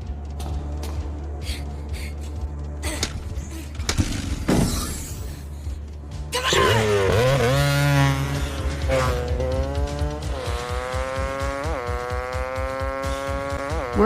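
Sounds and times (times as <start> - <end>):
film score music: 0.0 - 6.4
vehicle engine revving: 7.0 - 14.0.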